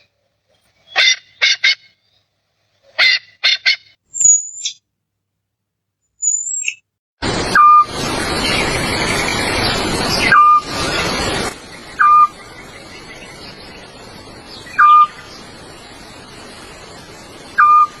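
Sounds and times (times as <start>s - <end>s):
bird whistled call: 3.0s - 4.8s, 6.2s - 6.8s, 12.0s - 12.4s, 14.6s - 15.2s, 17.6s - 18.0s
loud steady rushing noise: 7.2s - 18.0s.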